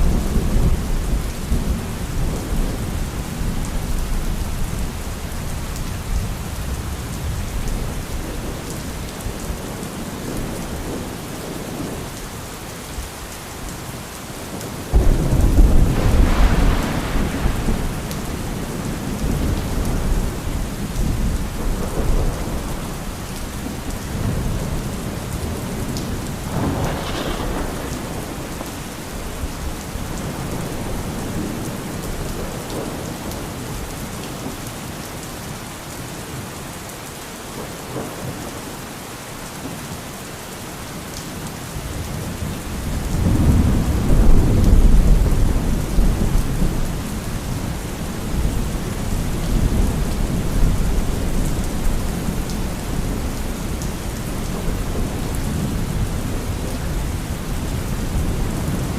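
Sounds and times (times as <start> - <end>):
steady rain: 0.0 - 58.9
thunder crack: 14.9 - 20.3, 26.5 - 28.9
rolling thunder: 14.9 - 33.6, 41.9 - 58.9.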